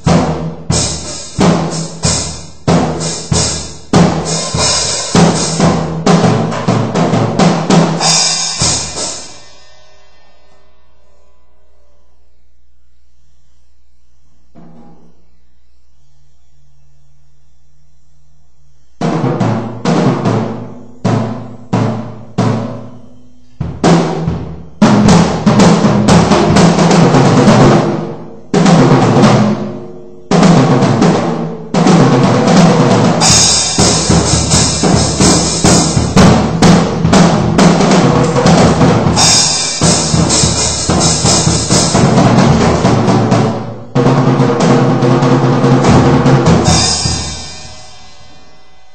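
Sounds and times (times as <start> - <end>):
crashing cymbals: 0.0 - 5.8, 7.8 - 17.7, 33.1 - 44.0, 46.5 - 48.9
bass drum snare and toms: 0.0 - 9.4, 23.6 - 29.7, 30.3 - 47.8.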